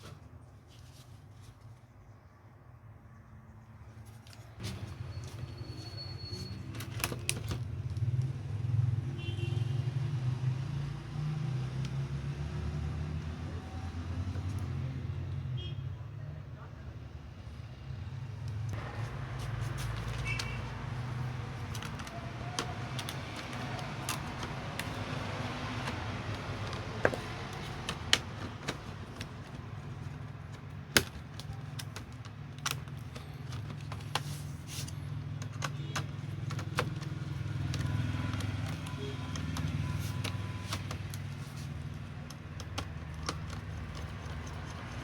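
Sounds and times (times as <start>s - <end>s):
small hard parts clicking: 35.2s - 45.0s.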